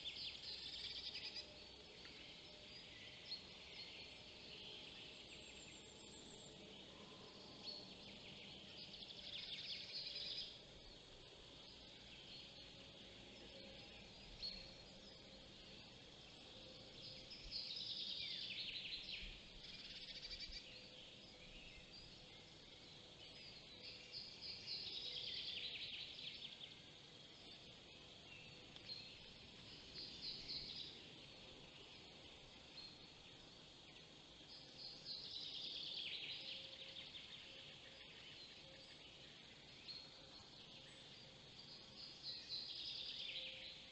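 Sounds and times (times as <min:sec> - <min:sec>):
faint songbird song: 0:00.0 - 0:43.9.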